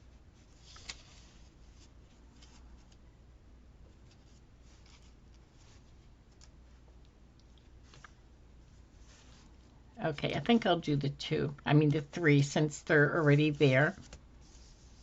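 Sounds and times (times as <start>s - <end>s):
paper rustling and scraping: 0.4s - 3.0s, 4.0s - 6.1s, 13.2s - 15.0s.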